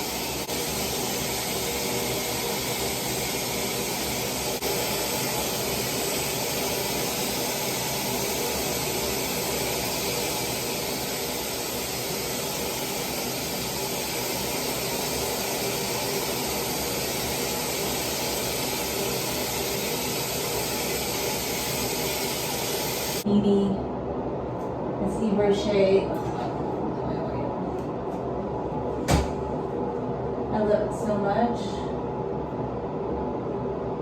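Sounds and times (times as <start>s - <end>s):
hair dryer blowing air: 0.0s - 23.2s.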